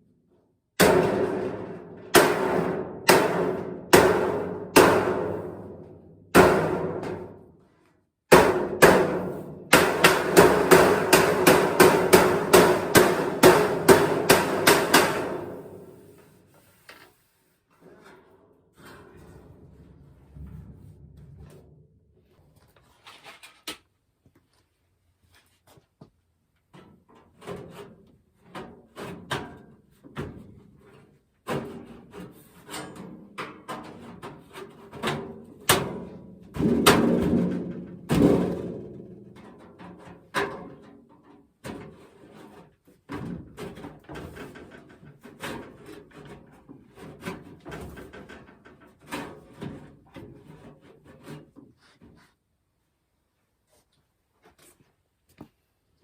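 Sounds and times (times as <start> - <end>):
knocks bangs and clattering: 0.8 - 7.4, 8.3 - 15.8, 35.1 - 39.4.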